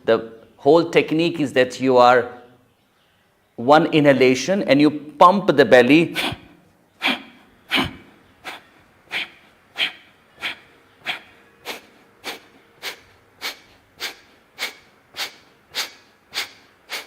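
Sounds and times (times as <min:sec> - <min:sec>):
forceful nasal exhalations: 0:06.1 - 0:17.0
quiet inhalations: 0:06.2 - 0:17.0.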